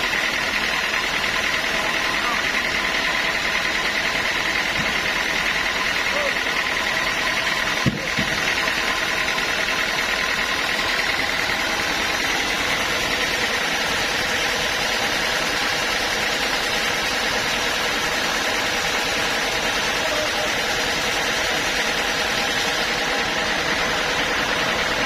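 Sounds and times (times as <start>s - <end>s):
sawmill machinery whining: 0.0s - 25.0s
short knock: 7.8s - 8.3s.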